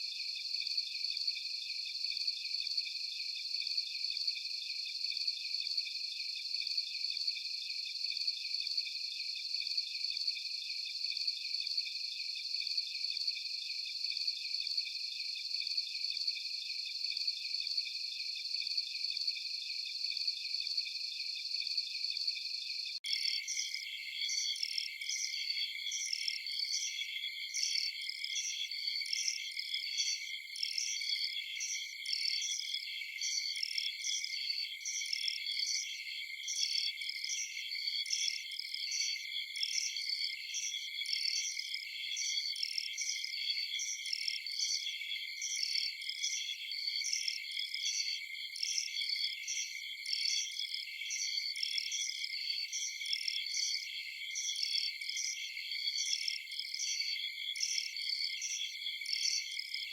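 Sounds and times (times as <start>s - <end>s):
pulsing cricket chirp: 23.1s - 59.9s.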